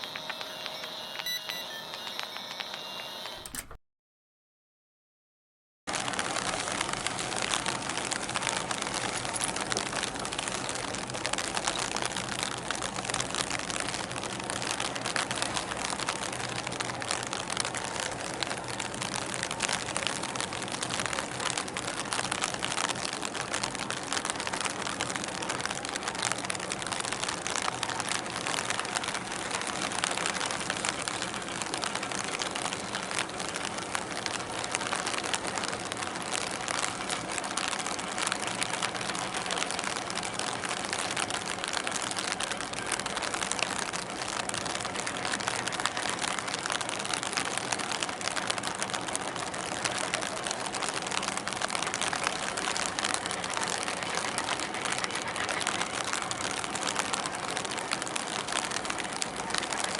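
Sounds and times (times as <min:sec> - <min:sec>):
dense hiss with crackle: 0:00.0 - 0:03.8, 0:05.9 - 0:59.9.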